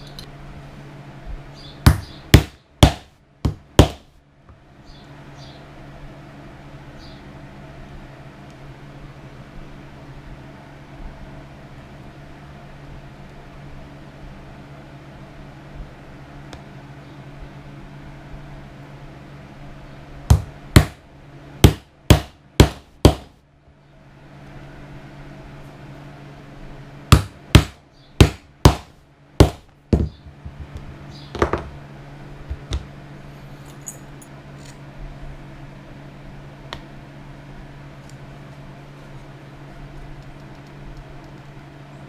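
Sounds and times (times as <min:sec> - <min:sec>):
low steady hum: 0:00.0 - 0:42.0
hammer striking leather tool: 0:01.9 - 0:04.0, 0:20.3 - 0:21.0, 0:21.6 - 0:23.3, 0:27.1 - 0:30.2.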